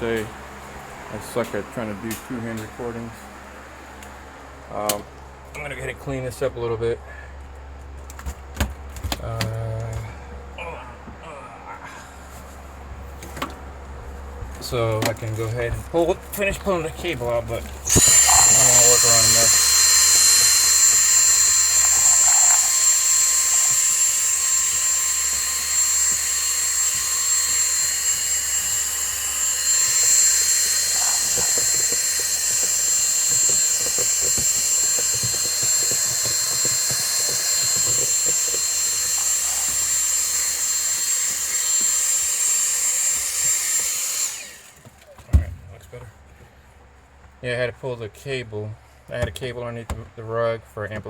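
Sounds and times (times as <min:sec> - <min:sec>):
handheld vacuum cleaner whining: 0:17.8 - 0:45.1.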